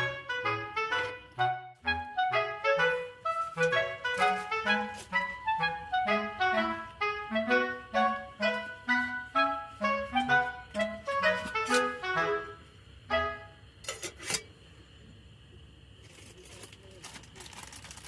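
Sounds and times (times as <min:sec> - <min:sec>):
bouncy instrumental music: 0:00.0 - 0:13.6.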